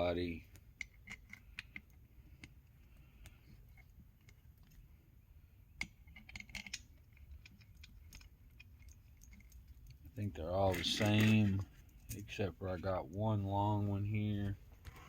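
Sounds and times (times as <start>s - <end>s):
metal bolts clicking and clinking: 10.6s - 12.2s.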